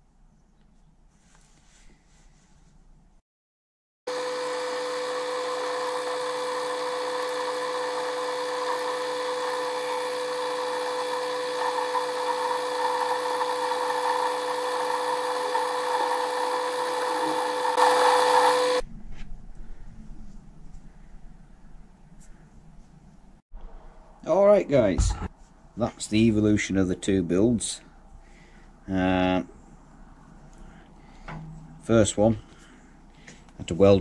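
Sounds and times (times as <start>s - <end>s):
lathe motor tone: 4.1s - 18.8s
metal cutting noise: 4.1s - 18.8s.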